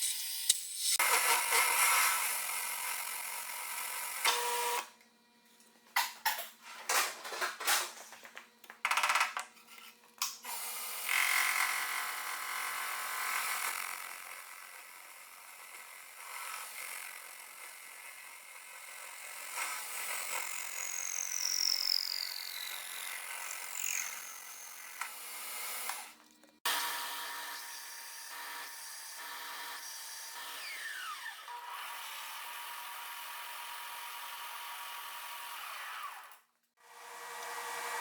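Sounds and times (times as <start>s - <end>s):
welding arc hissing and buzzing: 0.0s - 1.6s.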